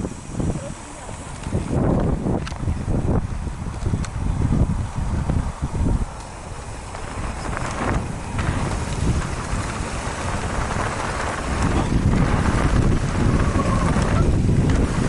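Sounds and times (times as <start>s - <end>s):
bike tyre rumble on trail: 0.0s - 15.0s
wind buffeting microphone: 0.0s - 15.0s.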